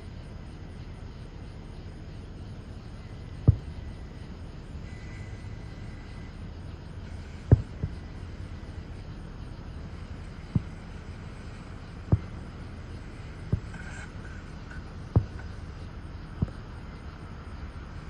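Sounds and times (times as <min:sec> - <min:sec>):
low background rumble: 0:00.0 - 0:18.0
fireworks booming: 0:03.2 - 0:06.2, 0:07.1 - 0:17.0.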